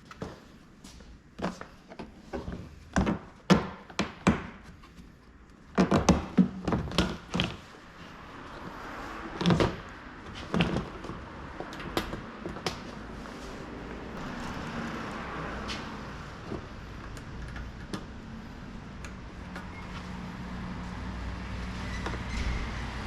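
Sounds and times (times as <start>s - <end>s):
hard objects knocking and clattering: 5.7s - 7.7s.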